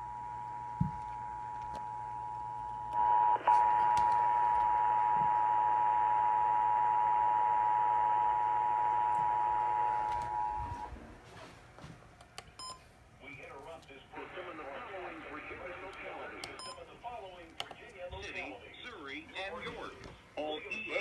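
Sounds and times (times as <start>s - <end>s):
radio hiss: 13.2s - 21.0s.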